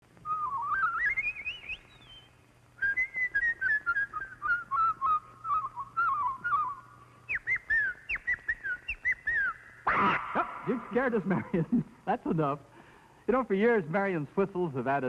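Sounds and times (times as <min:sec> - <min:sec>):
woman imitating bird calls: 0:03.6 - 0:10.8.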